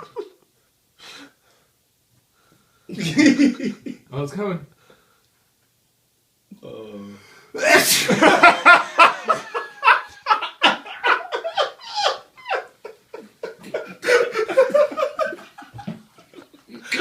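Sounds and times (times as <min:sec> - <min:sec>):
person sneezing: 0:07.6 - 0:08.2
hard breathless laughter: 0:07.6 - 0:17.0.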